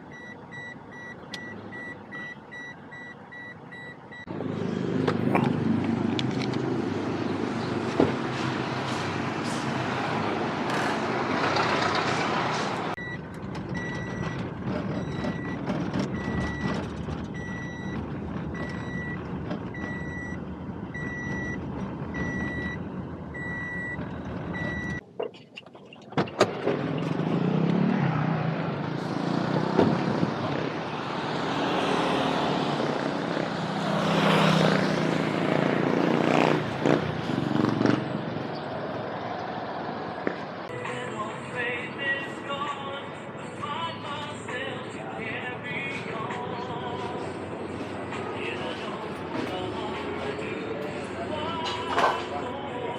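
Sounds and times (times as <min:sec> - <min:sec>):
vehicle rumble: 0:00.0 - 0:52.9
reversing alarm beeping: 0:00.1 - 0:04.3, 0:13.0 - 0:13.2, 0:19.8 - 0:20.4, 0:21.0 - 0:21.6, 0:22.2 - 0:22.8, 0:23.4 - 0:25.0.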